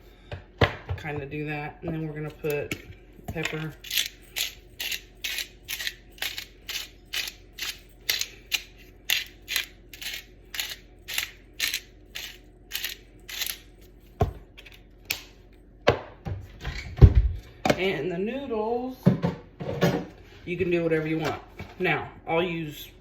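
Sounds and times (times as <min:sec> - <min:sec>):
pepper mill grinding: 0:02.3 - 0:15.3.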